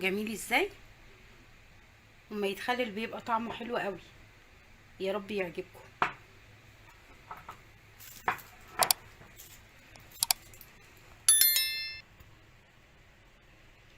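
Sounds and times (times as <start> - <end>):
bright bell-like chime: 11.3 - 12.0.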